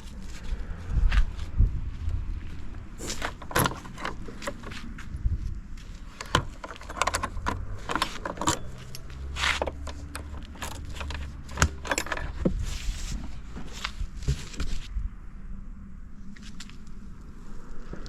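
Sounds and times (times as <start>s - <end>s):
handling clicks and taps: 3.0s - 5.0s, 6.0s - 12.6s
light metallic jingling: 6.0s - 12.4s.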